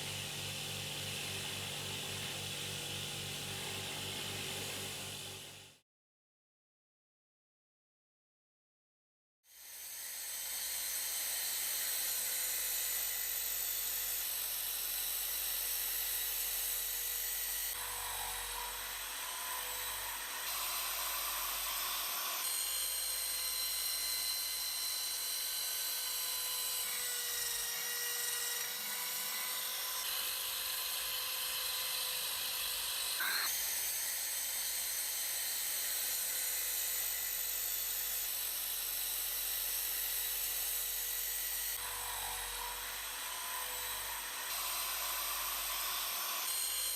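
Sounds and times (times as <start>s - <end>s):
rotary tool whining: 10.7s - 46.9s.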